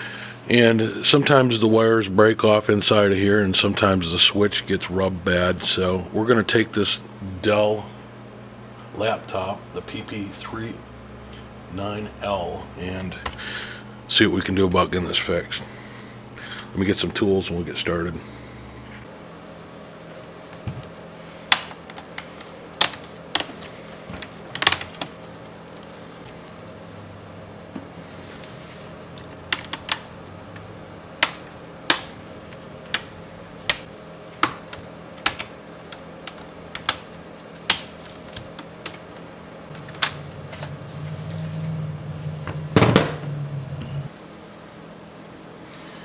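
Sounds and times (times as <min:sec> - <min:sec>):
loud plastic snap: 0:36.3 - 0:37.9, 0:42.8 - 0:43.2.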